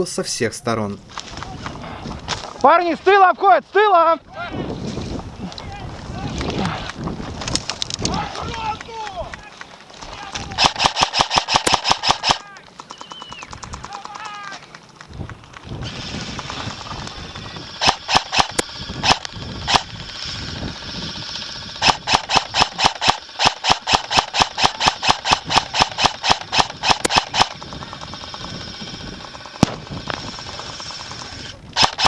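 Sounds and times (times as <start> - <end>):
airsoft guns firing: 6.5 - 32.0.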